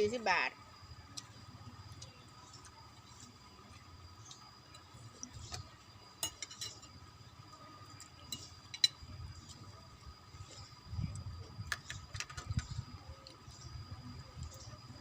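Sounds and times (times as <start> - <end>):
spoon clinking on plate: 6.2 - 6.9.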